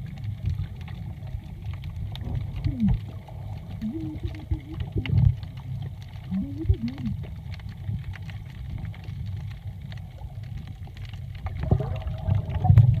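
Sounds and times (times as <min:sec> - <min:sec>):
crackle of small clicks: 0:00.0 - 0:13.0
underwater water rumble: 0:00.0 - 0:13.0.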